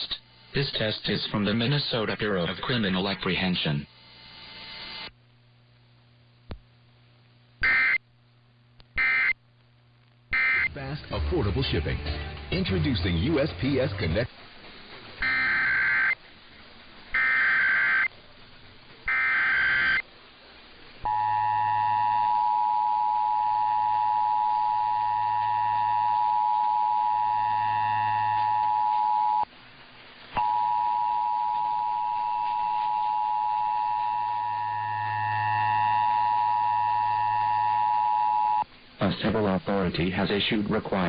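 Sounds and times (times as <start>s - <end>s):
warbling data bursts: 10.3s - 10.8s, 15.2s - 16.2s, 17.1s - 18.1s, 19.0s - 20.0s
two-tone attention signal: 21.1s - 29.4s, 30.4s - 38.6s.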